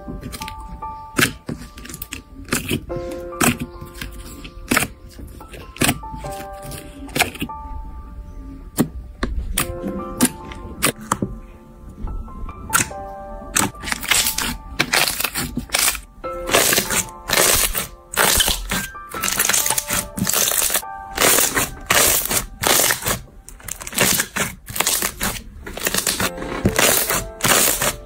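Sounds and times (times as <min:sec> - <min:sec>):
soft background music: 0:00.0 - 0:28.0
slime squishing and crackling: 0:00.2 - 0:07.5, 0:13.5 - 0:28.0.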